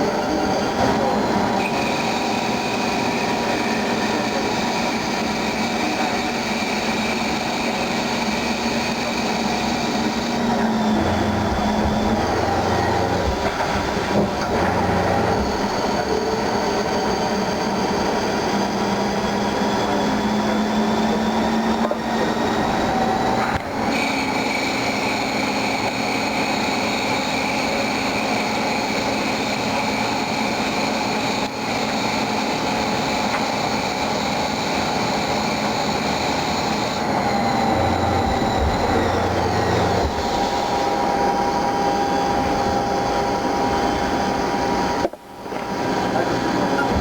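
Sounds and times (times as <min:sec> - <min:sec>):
lathe machining with whining tones: 0:00.0 - 0:47.0.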